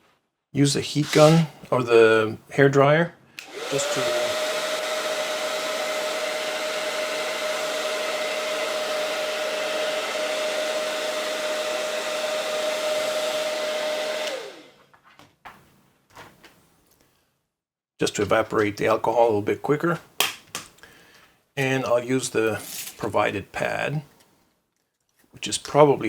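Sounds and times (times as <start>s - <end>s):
hot-air blower whining: 3.4s - 14.8s, 21.6s - 23.0s.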